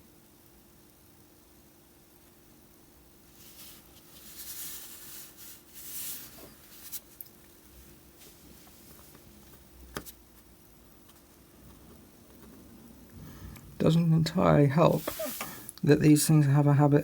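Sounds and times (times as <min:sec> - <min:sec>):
soft hissy scraping and rustling: 0:03.2 - 0:17.0.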